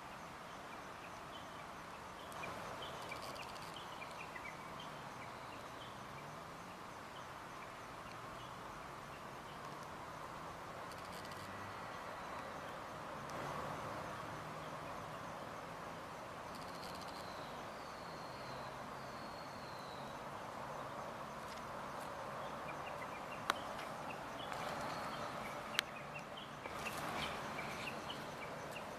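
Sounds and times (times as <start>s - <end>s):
outdoor background hiss: 0.0s - 28.9s.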